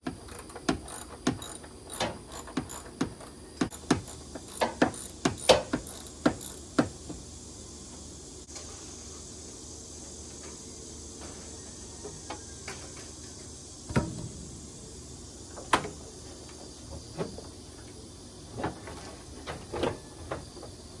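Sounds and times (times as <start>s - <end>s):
steady low hum: 0.0s - 19.4s.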